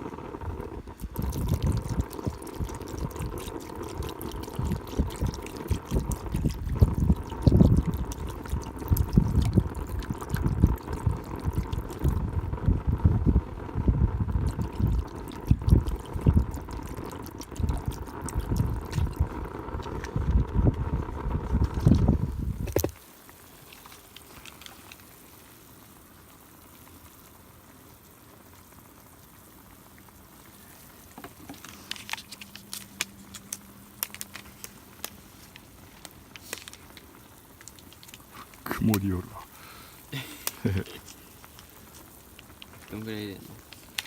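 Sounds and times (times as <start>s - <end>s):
wind buffeting microphone: 1.0s - 3.2s, 4.6s - 16.8s, 17.6s - 23.0s.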